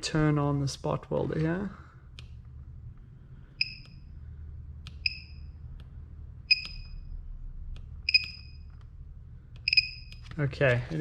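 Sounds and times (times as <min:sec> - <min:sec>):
steady low hum: 0:00.0 - 0:11.0
short high beeps: 0:09.7 - 0:10.1.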